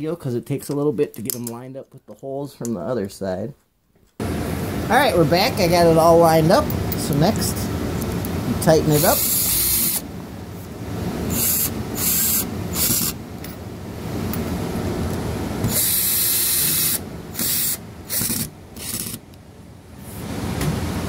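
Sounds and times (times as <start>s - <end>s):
screwdriver tightening screws: 11.3s - 13.2s, 15.7s - 19.2s.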